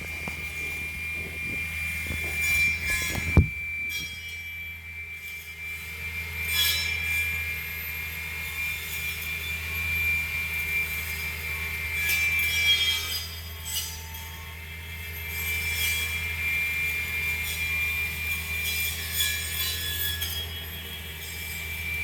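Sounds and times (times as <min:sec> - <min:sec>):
branches crackling: 0:00.0 - 0:04.2.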